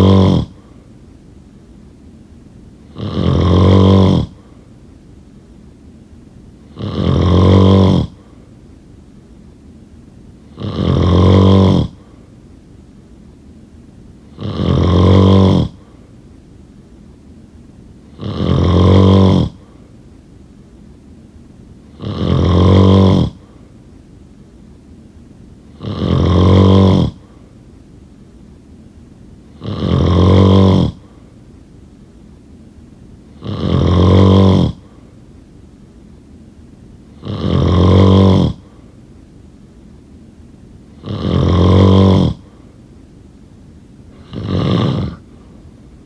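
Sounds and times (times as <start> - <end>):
person snoring: 0.0 - 0.8, 2.9 - 4.6, 6.7 - 8.4, 10.5 - 12.2, 14.3 - 16.0, 18.1 - 19.9, 21.9 - 23.6, 25.7 - 27.5, 29.5 - 31.3, 33.3 - 35.1, 37.1 - 38.8, 40.9 - 42.7, 44.1 - 45.6
quiet breathing: 0.0 - 46.0.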